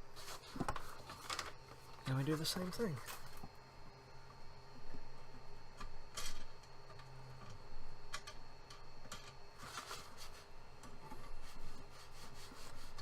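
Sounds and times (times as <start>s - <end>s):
faint steady hum: 0.0s - 13.0s
paper rustling: 9.6s - 10.5s.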